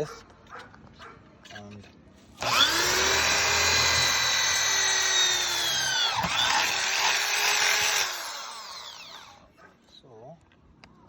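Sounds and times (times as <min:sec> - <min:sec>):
electric drill running: 0:02.4 - 0:09.5.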